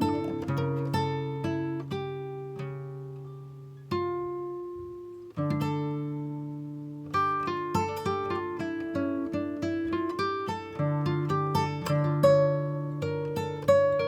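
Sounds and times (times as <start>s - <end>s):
plucked acoustic guitar: 0.0s - 14.0s.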